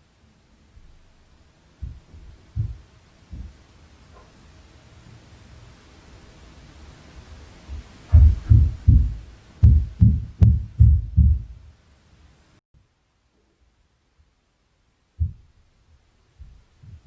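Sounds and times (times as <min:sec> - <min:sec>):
dull thuds through ceiling: 0:01.8 - 0:03.7, 0:07.7 - 0:11.7, 0:15.2 - 0:15.6, 0:16.4 - 0:17.0.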